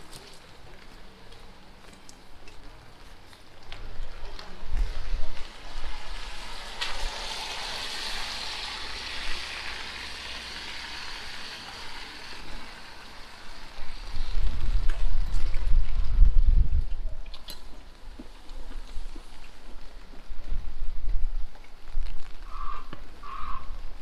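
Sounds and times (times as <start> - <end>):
wind buffeting microphone: 3.6 - 7.3, 13.5 - 24.0
rain hiss on wet street: 4.8 - 14.9.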